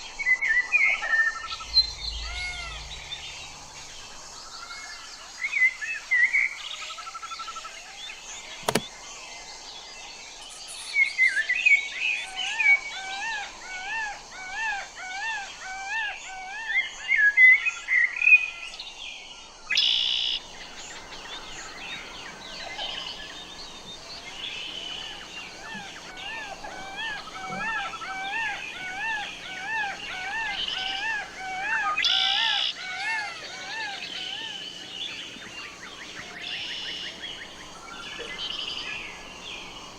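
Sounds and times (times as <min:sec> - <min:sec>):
bird chirps: 0:00.0 - 0:08.9, 0:19.7 - 0:39.9
bird whistling rising and falling notes: 0:01.0 - 0:05.7, 0:24.2 - 0:35.2
sharp click: 0:08.6 - 0:08.9.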